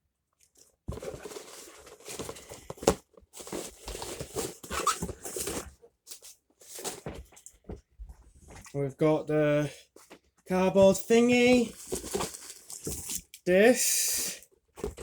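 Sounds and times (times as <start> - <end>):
cardboard rustling and scraping: 0.9 - 8.7, 10.0 - 13.3, 14.8 - 15.0.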